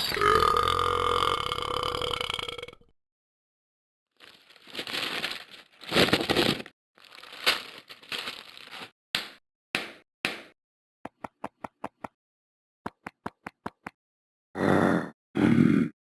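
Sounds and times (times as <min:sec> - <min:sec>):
loud burp: 0:00.0 - 0:02.9.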